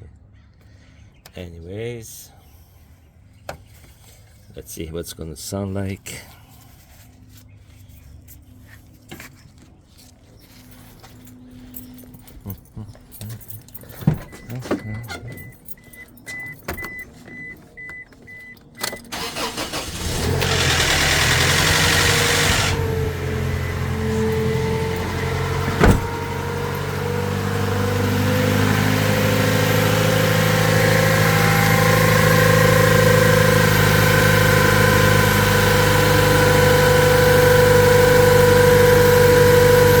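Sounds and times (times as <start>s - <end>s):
engine whine: 14.0s - 40.0s
engine starting and idling: 18.9s - 40.0s.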